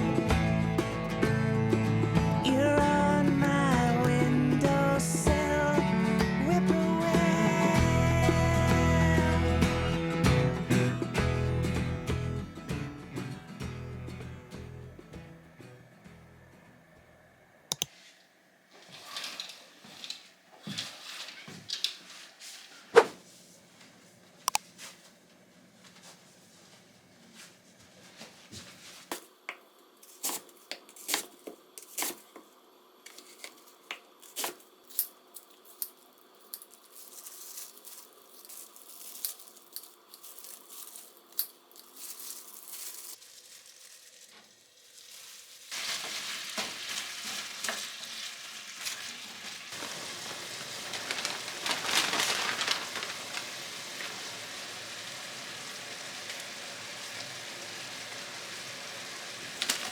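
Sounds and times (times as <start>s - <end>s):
food sizzling in a pan: 36.9s - 59.9s.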